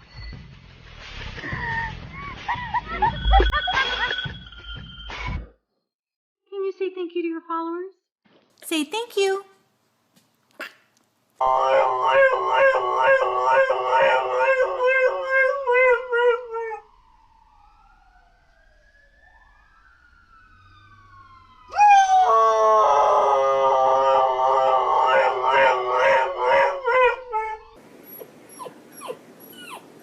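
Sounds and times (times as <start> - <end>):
dog howling: 11.4 - 17.0, 21.7 - 30.0.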